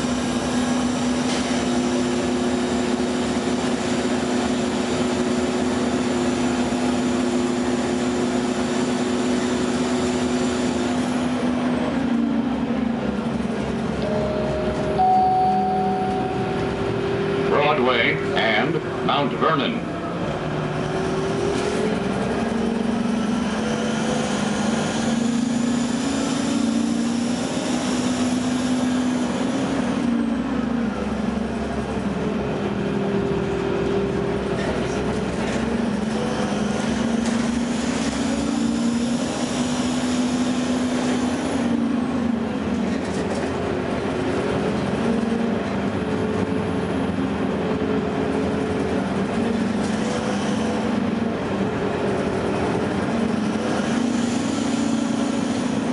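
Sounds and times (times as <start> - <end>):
bus engine running: 0.0 - 55.9
road noise: 0.0 - 55.9
pitched whine: 13.9 - 19.5.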